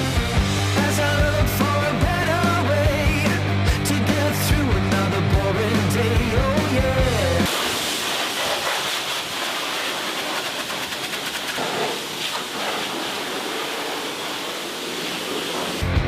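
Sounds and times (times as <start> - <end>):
steady rushing hiss: 7.4 - 16.0.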